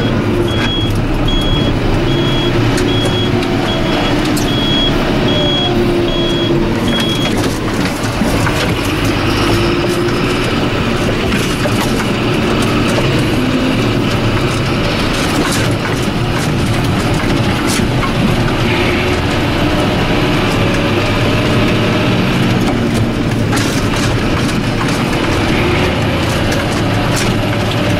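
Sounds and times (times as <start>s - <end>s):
high beeping: 0.0s - 7.5s
diesel tractor engine running: 0.0s - 27.9s
knocks and rattles: 0.0s - 27.9s.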